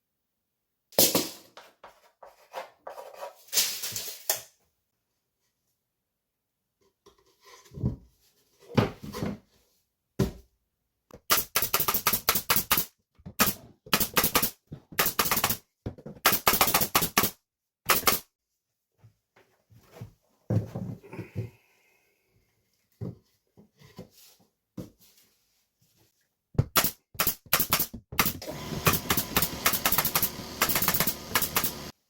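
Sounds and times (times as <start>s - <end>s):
power screwdriver rattling: 27.2s - 31.9s.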